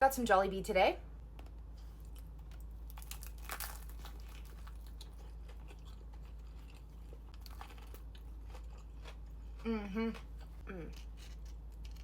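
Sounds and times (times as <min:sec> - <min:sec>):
person chewing crunchy food: 0:01.6 - 0:12.0.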